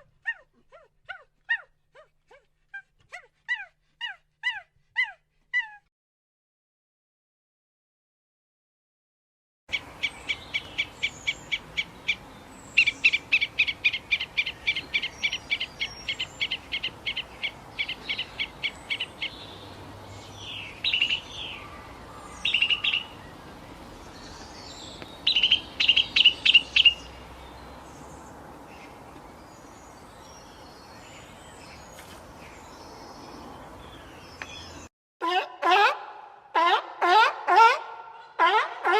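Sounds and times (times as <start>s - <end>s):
bird chirping: 9.7s - 34.9s.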